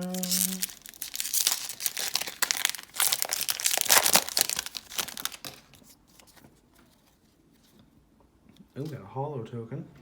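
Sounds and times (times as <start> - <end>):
foil wrapper crinkling: 0.0 - 5.8.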